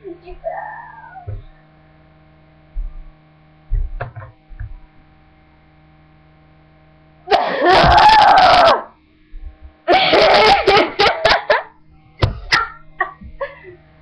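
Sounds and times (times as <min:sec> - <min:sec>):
soft low thumps: 0:01.2 - 0:01.6, 0:02.7 - 0:05.0, 0:09.3 - 0:09.8, 0:13.2 - 0:13.5
person yelling loudly: 0:07.5 - 0:08.9.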